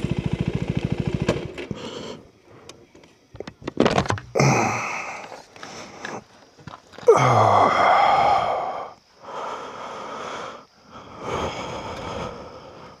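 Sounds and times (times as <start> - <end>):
motorcycle engine idling: 0.0 - 1.8
clicks and knocks handling bike: 3.0 - 4.4, 5.2 - 7.1.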